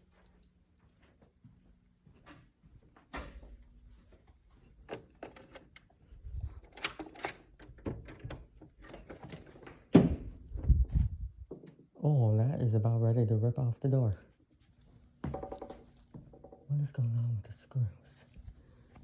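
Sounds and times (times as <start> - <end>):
door thump: 9.9 - 10.4.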